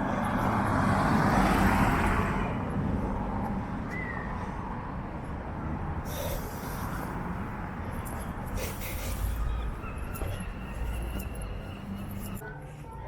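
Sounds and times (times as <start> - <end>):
car passing: 0.0 - 12.4
low traffic rumble: 0.0 - 12.8
vehicle hiss: 6.0 - 7.5.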